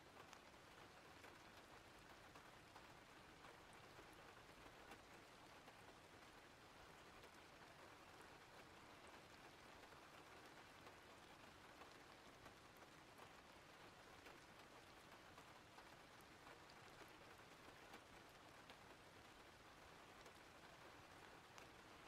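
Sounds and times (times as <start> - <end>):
faint steady rain: 0.0 - 22.0
rain drops ticking: 0.0 - 22.0.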